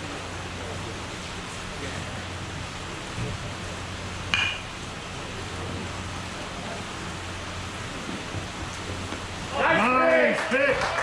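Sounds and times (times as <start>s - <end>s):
steady background noise: 0.0s - 11.0s
metal bat hitting ball: 4.4s - 4.6s.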